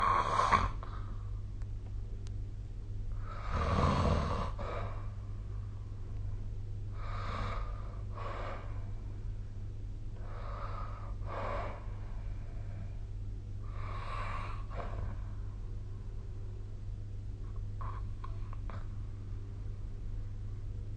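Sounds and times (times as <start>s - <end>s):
person snoring: 0.0s - 0.8s, 3.2s - 5.0s
steady low hum: 0.0s - 20.9s.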